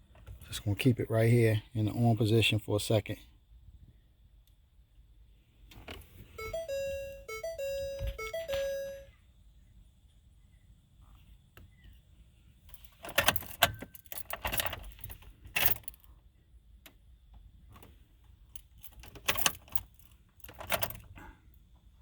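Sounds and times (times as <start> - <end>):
car keys jangling: 12.7 - 16.2, 18.6 - 21.2.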